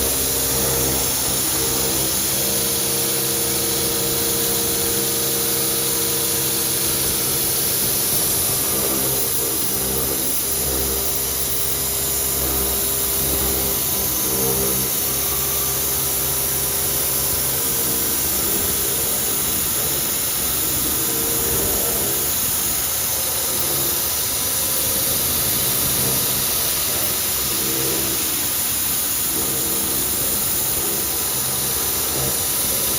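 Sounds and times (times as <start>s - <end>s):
milling machine cutting: 0.0s - 32.9s
steady machine tones: 3.9s - 17.3s, 20.9s - 28.7s.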